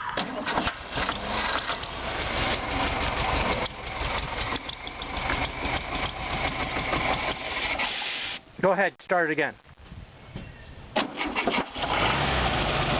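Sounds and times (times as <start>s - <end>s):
car engine cranking and running: 0.0s - 8.0s, 11.0s - 12.9s.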